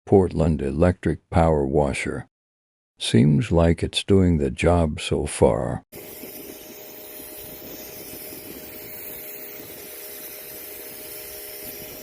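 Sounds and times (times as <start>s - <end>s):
pressure washer motor hum: 6.0s - 12.0s.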